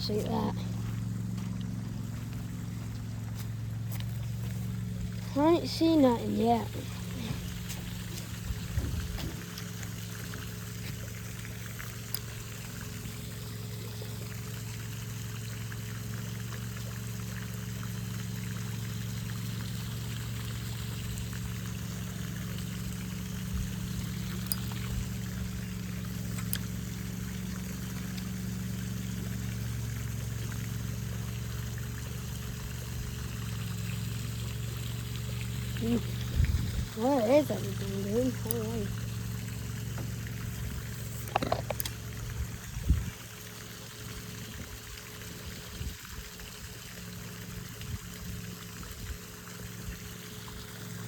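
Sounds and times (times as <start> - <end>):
low steady hum: 0.0 - 51.0
water trickling and pouring: 0.0 - 51.0.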